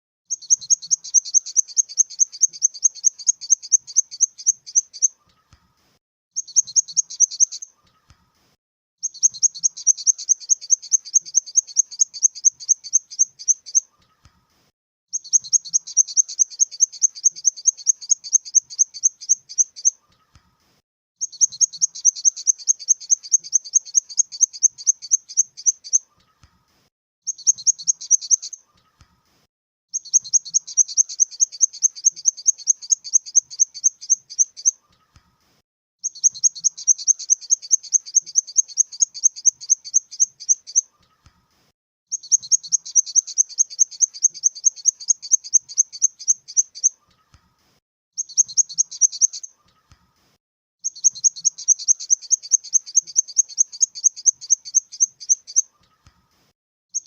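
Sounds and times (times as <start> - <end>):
grasshopper chirping: 9.0 - 13.6, 15.2 - 19.9, 21.2 - 26.0, 30.0 - 34.7, 36.0 - 40.8, 42.1 - 46.7, 50.8 - 55.6.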